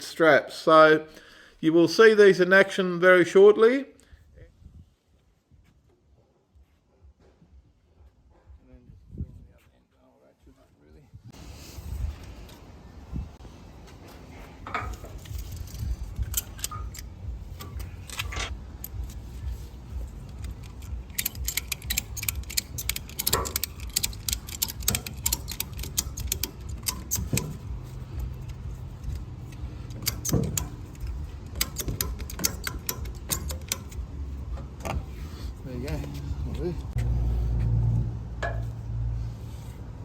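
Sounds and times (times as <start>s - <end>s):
ratchet strap clicking: 14.7s - 36.9s.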